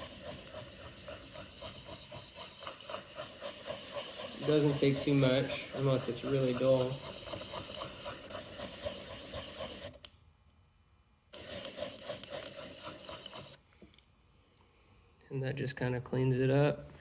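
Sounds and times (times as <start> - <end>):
blade rubbing on sharpening stone: 0.0 - 9.9.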